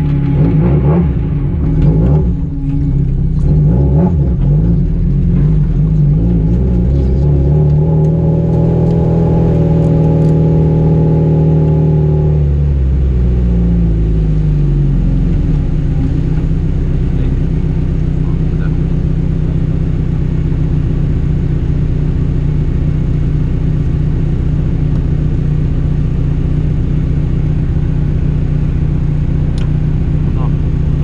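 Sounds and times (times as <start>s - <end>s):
rally car engine revving: 0.0s - 31.0s.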